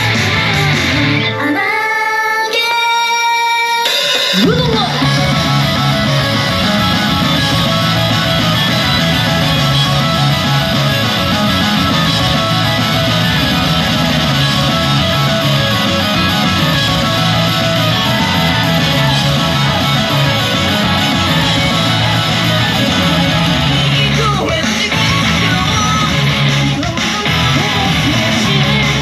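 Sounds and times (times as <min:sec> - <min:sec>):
steady beat: 0:00.0 - 0:01.2, 0:04.2 - 0:29.0
distorted electric guitar strumming: 0:00.0 - 0:01.6, 0:04.3 - 0:29.0
rock pop instrumental: 0:00.0 - 0:29.0.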